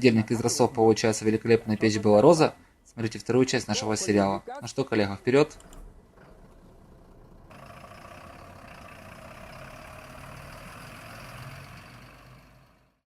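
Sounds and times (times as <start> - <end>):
truck engine running: 5.2 - 13.0.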